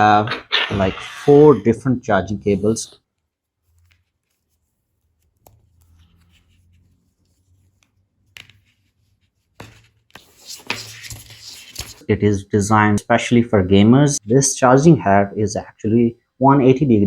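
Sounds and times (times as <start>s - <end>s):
soft rubbing of cables: 2.5s - 12.0s.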